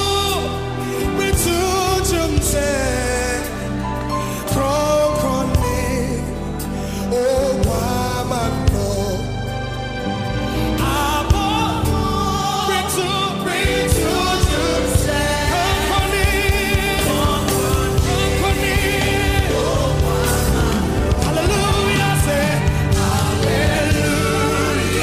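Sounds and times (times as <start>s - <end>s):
choir singing: 10.7s - 25.0s
band with drum beat: 13.6s - 25.0s.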